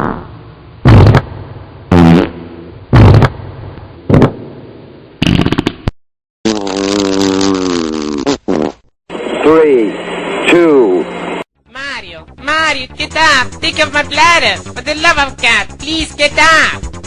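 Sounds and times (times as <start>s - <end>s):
fart sound effects: 0.0s - 1.3s, 1.9s - 3.4s, 4.1s - 4.4s, 5.2s - 8.9s.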